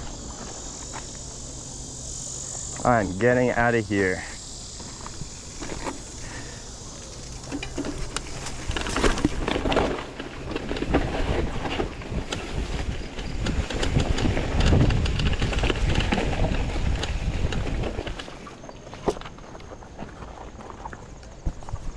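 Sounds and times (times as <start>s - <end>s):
mountain bike rattling: 0.0s - 21.9s
wind on microphone: 7.8s - 18.5s.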